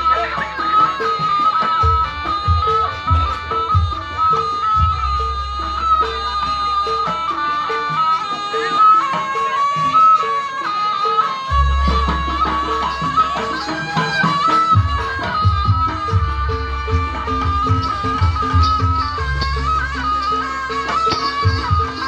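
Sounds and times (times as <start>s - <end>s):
shrill reedy wind instrument: 0.0s - 22.0s.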